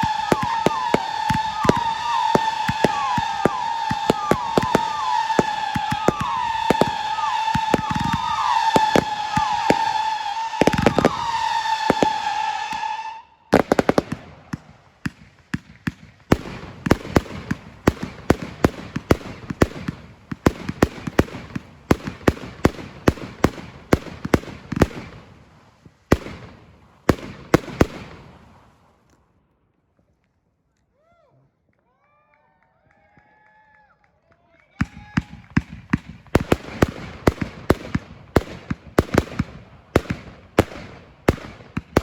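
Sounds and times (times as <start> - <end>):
gliding firework whistles: 0.0 - 14.1
firework whistling: 0.0 - 15.2
firework bangs: 0.0 - 29.0, 34.9 - 42.0.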